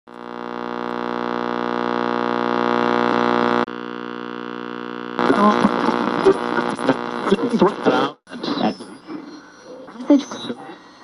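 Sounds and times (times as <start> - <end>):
radio static buzz: 0.1 - 8.8
radio broadcast voices: 0.3 - 11.0.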